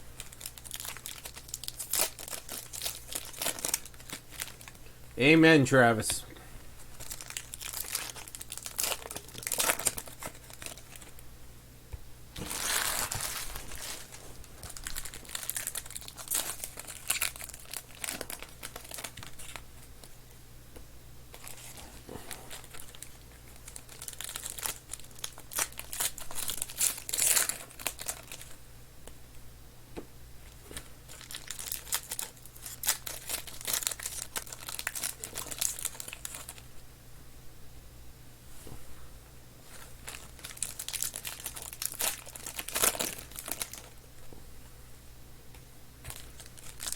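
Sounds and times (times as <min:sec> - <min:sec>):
card pack wrappers crinkling: 0:00.2 - 0:04.8, 0:06.9 - 0:11.2, 0:12.4 - 0:20.2, 0:21.3 - 0:28.6, 0:30.7 - 0:36.6, 0:39.7 - 0:44.0, 0:46.0 - 0:46.9.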